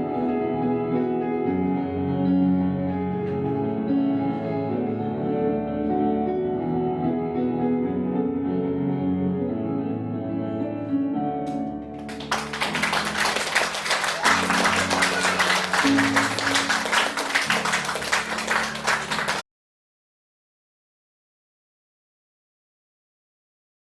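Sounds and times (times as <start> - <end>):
audience applause: 11.9 - 19.4.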